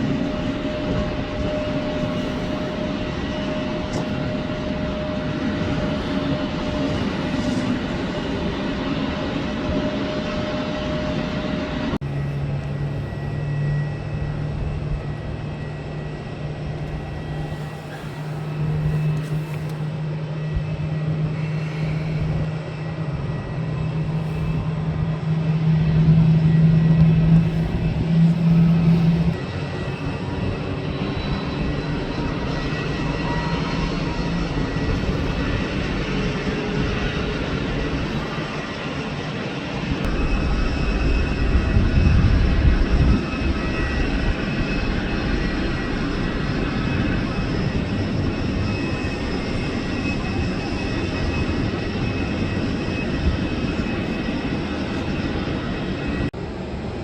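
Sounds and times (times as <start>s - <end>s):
jet engines droning: 0.0s - 57.0s
broad low rumble: 11.9s - 37.0s.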